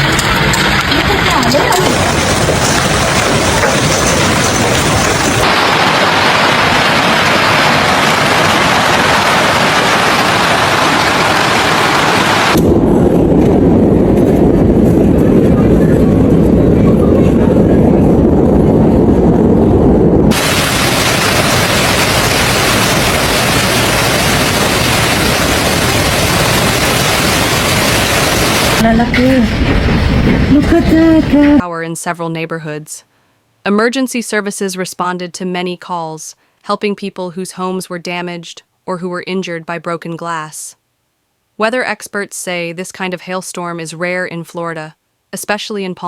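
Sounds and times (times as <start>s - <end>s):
hailstones pelting down: 0.0s - 12.6s, 20.3s - 31.6s.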